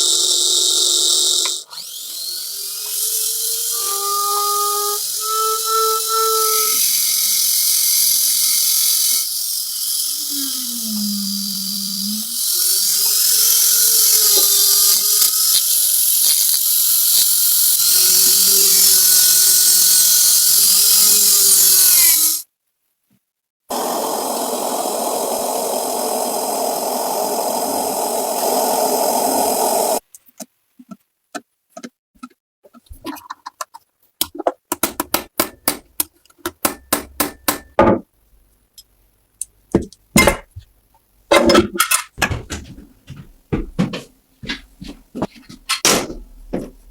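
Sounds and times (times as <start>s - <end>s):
high-pitched whirring power tool: 0.0s - 22.4s, 23.7s - 30.0s
coarse grinding tool: 0.0s - 22.5s
parts clicking and knocking: 30.1s - 38.1s, 38.7s - 44.6s, 45.2s - 46.9s.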